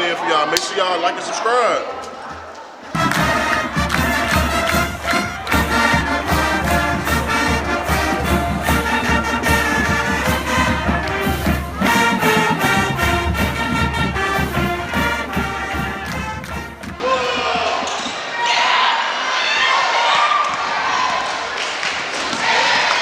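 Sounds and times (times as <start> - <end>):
music with beat and brass melody: 2.9 - 17.7.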